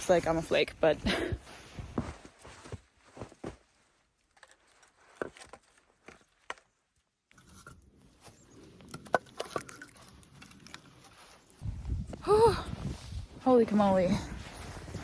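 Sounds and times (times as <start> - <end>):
footsteps crunching in snow: 1.4 - 3.9, 12.8 - 15.0.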